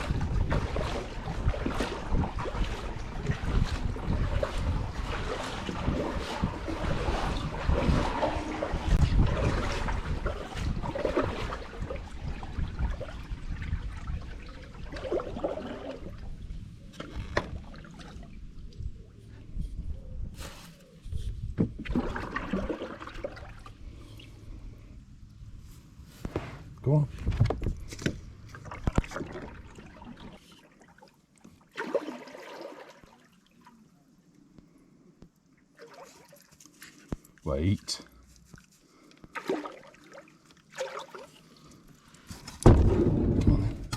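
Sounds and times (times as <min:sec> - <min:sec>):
paddle splashing water: 0:00.0 - 0:18.8, 0:21.6 - 0:24.4, 0:26.2 - 0:33.9, 0:35.7 - 0:37.4, 0:38.2 - 0:43.9
wind rumble on microphone: 0:00.0 - 0:22.0, 0:23.8 - 0:29.3.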